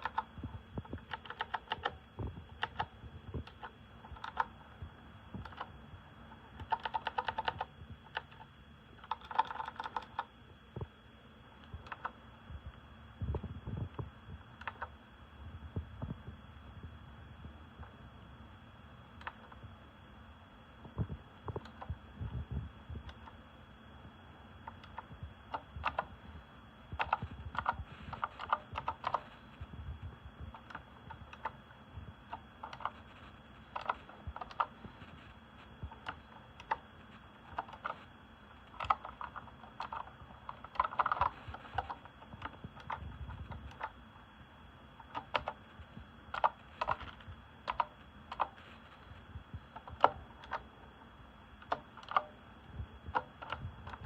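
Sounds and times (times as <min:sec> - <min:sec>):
clicky mechanical keyboard typing: 0:00.0 - 0:04.6, 0:05.4 - 0:10.3, 0:11.6 - 0:12.2, 0:14.5 - 0:15.0, 0:19.2 - 0:19.6, 0:21.5 - 0:22.0, 0:23.0 - 0:23.4, 0:24.6 - 0:26.1, 0:26.9 - 0:29.4, 0:30.4 - 0:35.2, 0:35.8 - 0:44.0, 0:45.0 - 0:45.6, 0:46.3 - 0:48.6, 0:49.7 - 0:50.7, 0:51.6 - 0:52.4, 0:53.0 - 0:54.0.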